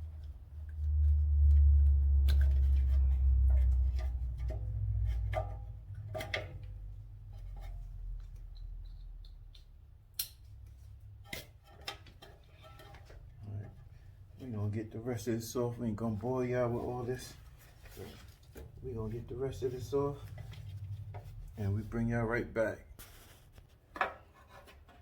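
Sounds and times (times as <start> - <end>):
low rumble: 0.0 - 6.0.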